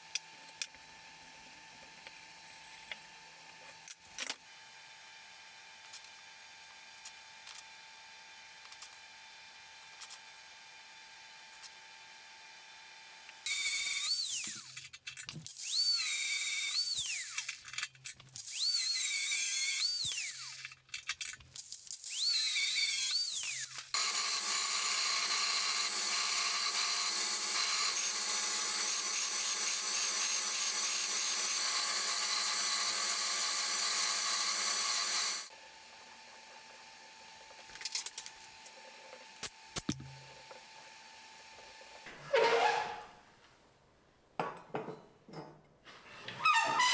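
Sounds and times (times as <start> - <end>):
power tool whine: 13.5 - 14.7, 15.6 - 17.6, 18.5 - 20.6, 22.1 - 37.2.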